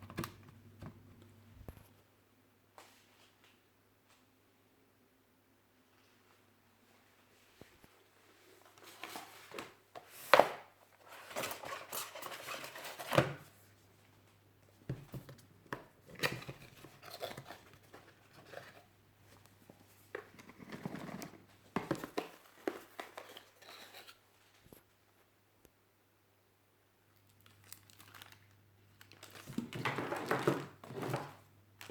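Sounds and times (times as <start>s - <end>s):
packaging rustling and tearing: 16.0s - 18.9s, 27.4s - 31.9s.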